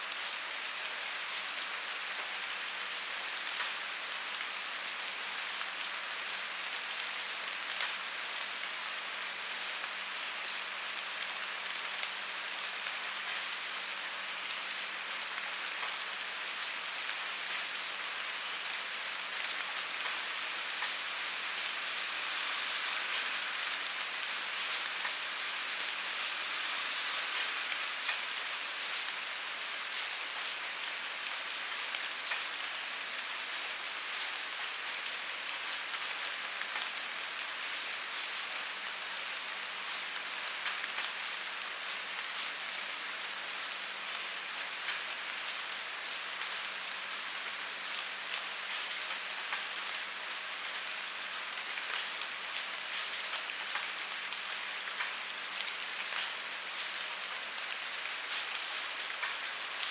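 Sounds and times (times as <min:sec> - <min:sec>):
steady rain hissing: 0:00.0 - 0:59.9
raindrops ticking: 0:57.8 - 0:59.5.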